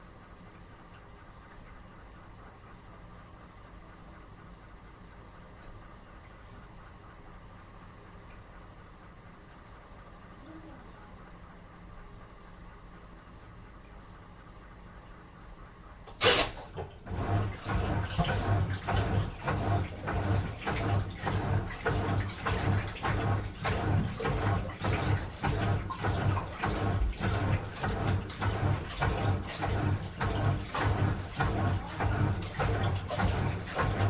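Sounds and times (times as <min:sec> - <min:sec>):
water sloshing in drum: 0:16.1 - 0:34.0
washing machine knock: 0:17.1 - 0:34.0.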